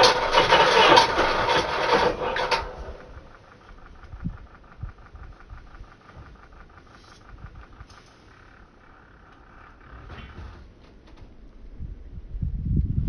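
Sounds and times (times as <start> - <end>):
faint rapid ticking: 0.0 - 10.0
loud engine noise: 0.0 - 10.7.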